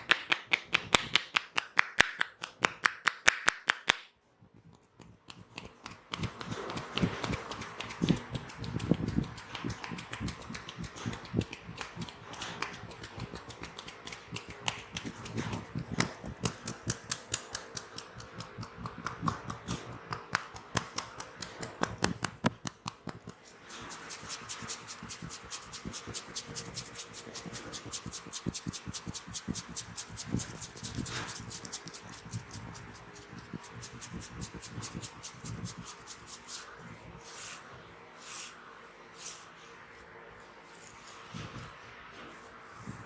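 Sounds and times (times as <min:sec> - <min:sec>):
hands tapping and rubbing in massage: 0:00.0 - 0:04.1, 0:04.7 - 0:36.8.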